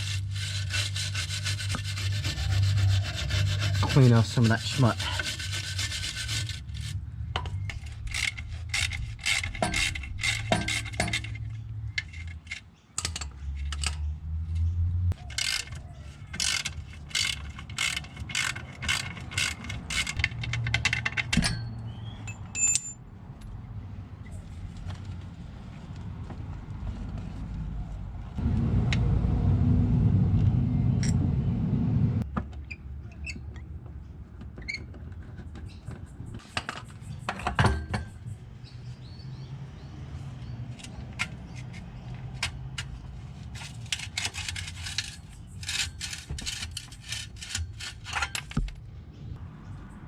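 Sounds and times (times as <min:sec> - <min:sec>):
metal tools clinking and scraping: 0:15.2 - 0:23.0, 0:40.8 - 0:48.7
low rumble: 0:26.9 - 0:32.3.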